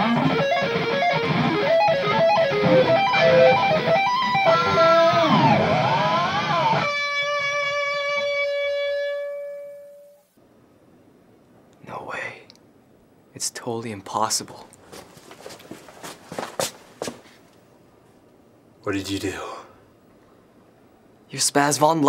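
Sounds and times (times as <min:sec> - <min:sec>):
electric guitar solo: 0:00.0 - 0:10.2.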